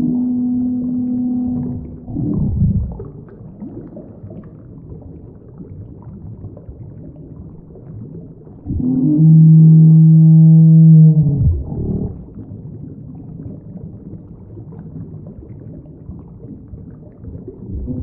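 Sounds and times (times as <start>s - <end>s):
deep monster roar: 0.0s - 3.0s, 8.7s - 12.2s, 17.7s - 18.0s
held low tone: 0.0s - 3.2s, 8.7s - 12.4s, 17.6s - 18.0s
low rumble: 0.0s - 3.4s, 8.6s - 12.6s, 17.6s - 18.0s.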